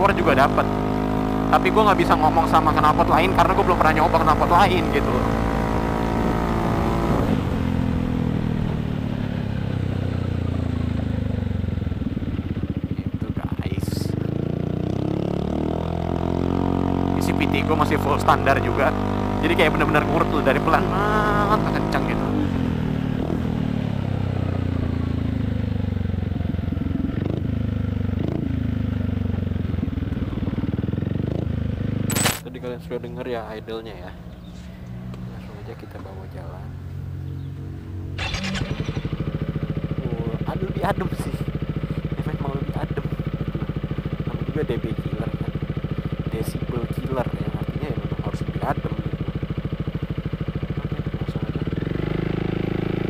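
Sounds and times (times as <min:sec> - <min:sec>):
scooter engine slowing to idle: 0:08.4 - 0:15.4, 0:22.5 - 0:32.0, 0:38.2 - 0:53.0.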